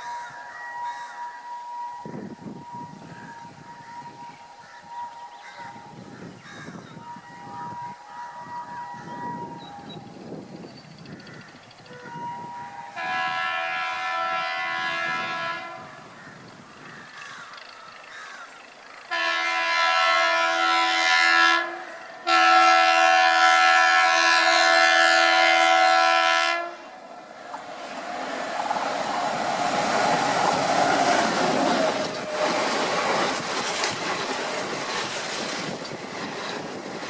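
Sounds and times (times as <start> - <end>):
train rattling along track: 0.0 - 37.0
train horn blasts: 6.8 - 10.4, 11.8 - 16.1, 19.1 - 27.0.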